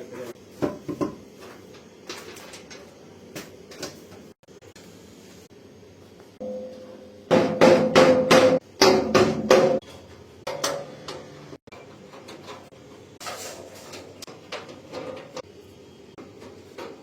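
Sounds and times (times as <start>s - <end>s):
metal parts struck ringing: 6.4s - 7.3s.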